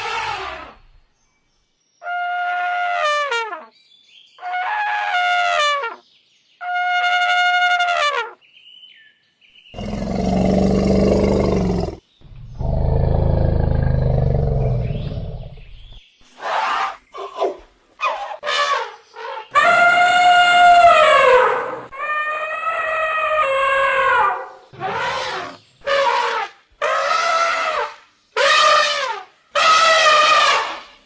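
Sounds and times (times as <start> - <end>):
elephant trumpeting: 18.4 - 30.8.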